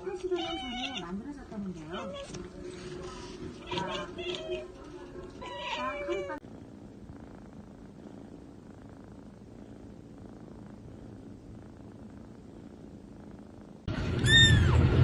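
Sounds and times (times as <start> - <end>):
faint low background sound: 0.0 - 15.0
cat meowing: 0.2 - 1.2, 1.8 - 2.4, 3.6 - 4.7, 5.3 - 6.4.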